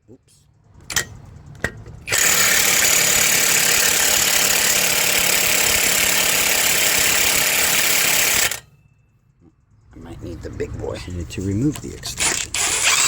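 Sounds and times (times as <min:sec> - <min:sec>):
impact wrench running: 0:02.1 - 0:08.6, 0:12.2 - 0:13.0.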